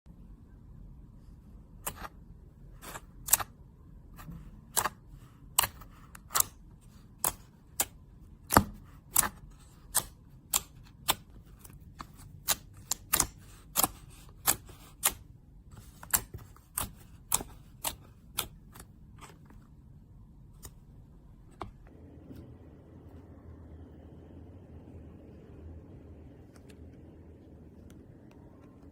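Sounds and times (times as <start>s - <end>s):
slime squishing with clicks and pops: 1.7s - 19.0s.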